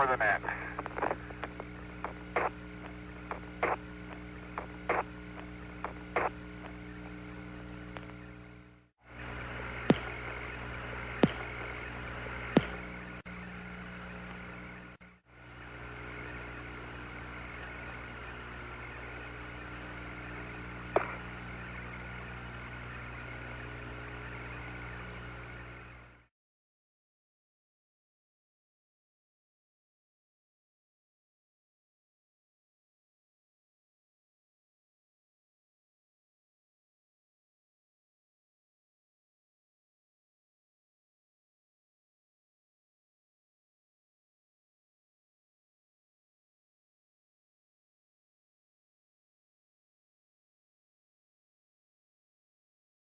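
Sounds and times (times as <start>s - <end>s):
mains hum: 0.0s - 26.3s
radio hiss: 0.0s - 26.3s
sharp clicks: 0.8s - 5.1s.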